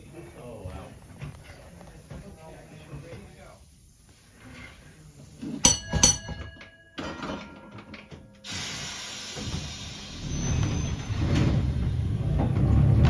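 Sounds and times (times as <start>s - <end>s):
bell ringing: 5.7s - 8.5s.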